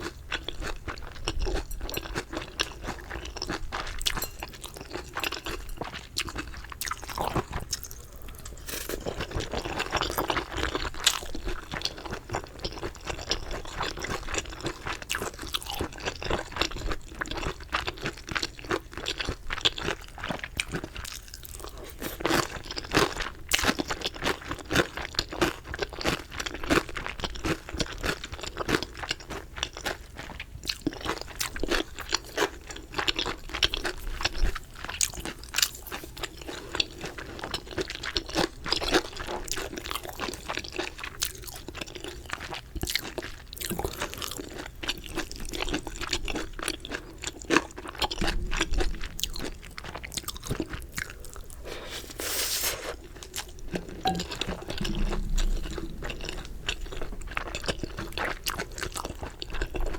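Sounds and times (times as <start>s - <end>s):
crunchy chewing: 0.0s - 16.6s, 33.0s - 59.9s.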